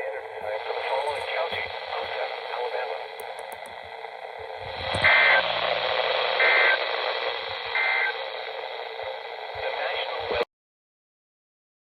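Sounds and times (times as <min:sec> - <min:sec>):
harsh two-pitch data warble: 0:00.0 - 0:10.4
radio hiss: 0:00.0 - 0:10.5.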